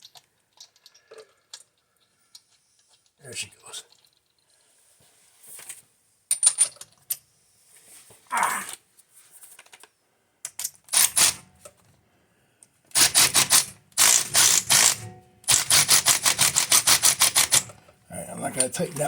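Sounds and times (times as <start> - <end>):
power tool rapid clicking: 10.9 - 11.4, 12.9 - 17.7.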